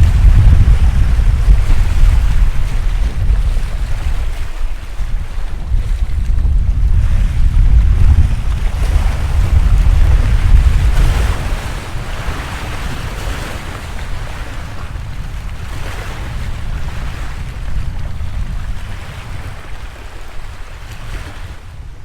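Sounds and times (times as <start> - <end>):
sea waves washing in: 0.0 - 22.0
wind rumbling on microphone: 0.0 - 22.0.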